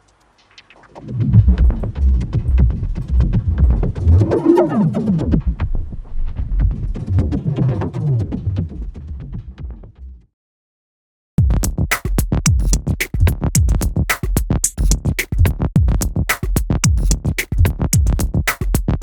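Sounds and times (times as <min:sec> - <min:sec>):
electronic percussion loop: 0:11.4 - 0:19.0.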